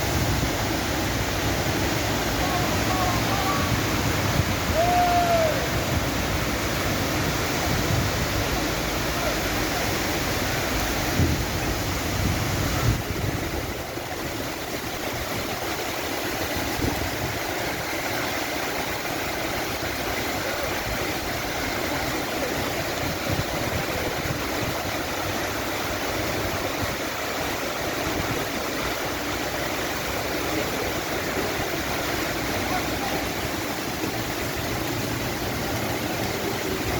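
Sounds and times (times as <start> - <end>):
heavy rain and floodwater rushing: 0.0 - 36.9.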